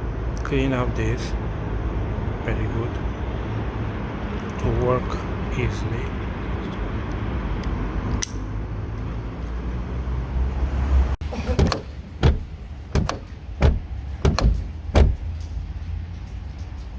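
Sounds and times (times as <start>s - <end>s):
low steady rumble: 11.3s - 16.9s
car door lock clunks and clicks: 11.4s - 15.3s.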